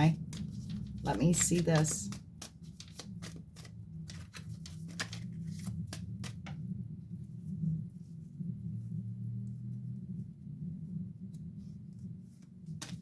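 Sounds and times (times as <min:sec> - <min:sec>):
cards being shuffled: 0:00.0 - 0:06.6, 0:12.7 - 0:13.0
low steady hum: 0:00.0 - 0:13.0.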